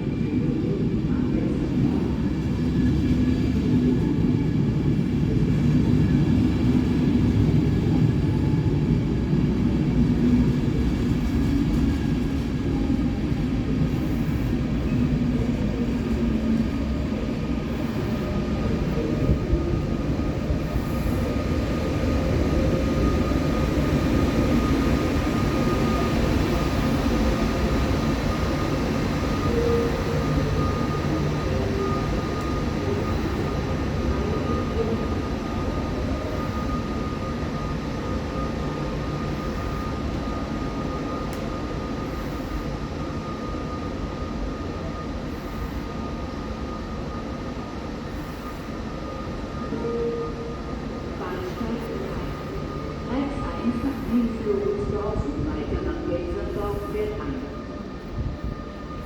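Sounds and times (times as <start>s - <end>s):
train low rumble: 0.0s - 59.0s
faint high whine: 13.7s - 59.0s.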